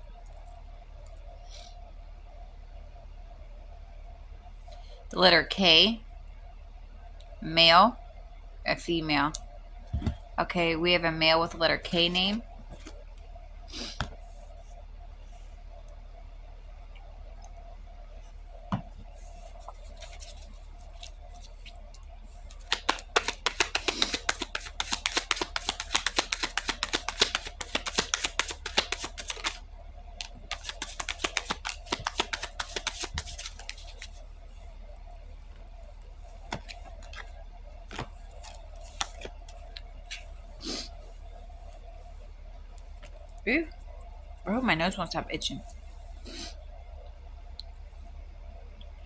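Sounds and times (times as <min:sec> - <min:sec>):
faint steady hum: 0:00.0 - 0:49.0
cards being shuffled: 0:19.6 - 0:21.8, 0:22.5 - 0:29.6, 0:30.2 - 0:34.2, 0:36.4 - 0:40.3.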